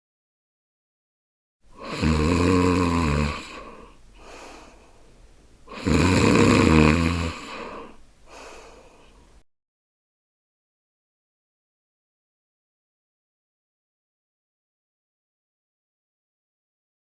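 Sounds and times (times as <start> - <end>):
woman snoring: 1.8 - 5.1, 5.7 - 9.3
faint breath out: 3.3 - 5.9, 7.2 - 9.4.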